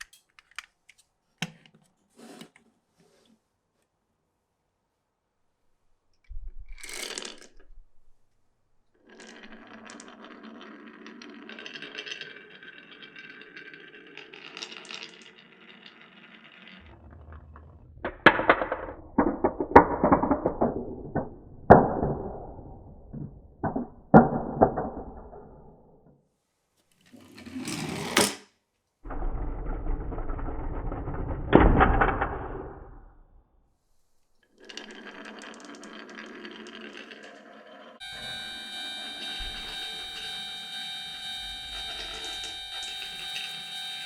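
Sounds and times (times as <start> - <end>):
marbles rolling along wooden rails: 6.4 - 8.0, 9.0 - 25.7, 29.1 - 33.0, 34.4 - 40.5
marbles clacking through wooden blocks: 6.5 - 7.8, 9.0 - 25.6, 34.4 - 37.9.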